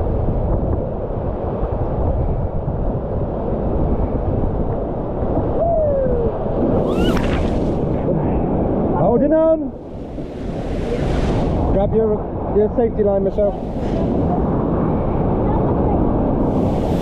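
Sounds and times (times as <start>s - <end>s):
wind buffeting microphone: 0.0s - 17.0s
falling cry: 5.6s - 7.6s.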